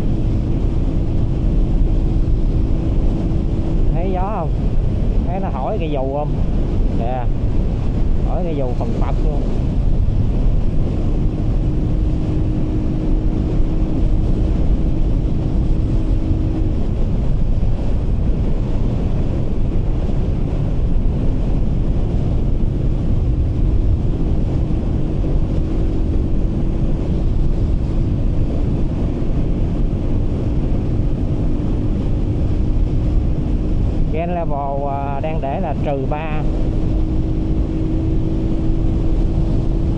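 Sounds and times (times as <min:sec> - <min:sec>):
motorcycle engine hum: 0:00.0 - 0:39.9
wind buffeting microphone: 0:00.0 - 0:39.9.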